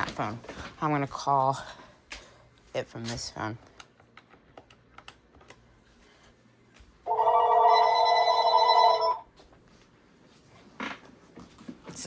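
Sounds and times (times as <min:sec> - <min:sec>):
telephone ringing electronic tone: 0:07.1 - 0:09.3.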